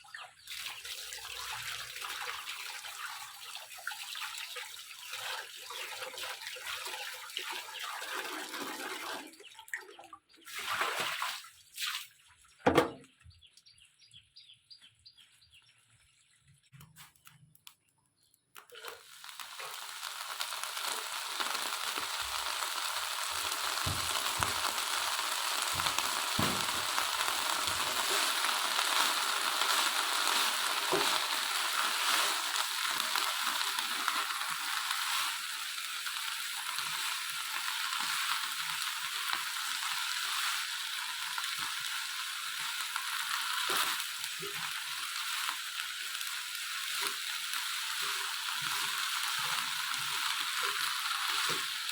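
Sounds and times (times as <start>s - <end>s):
vegetables sizzling in hot oil: 0.7s - 7.8s, 18.6s - 51.9s.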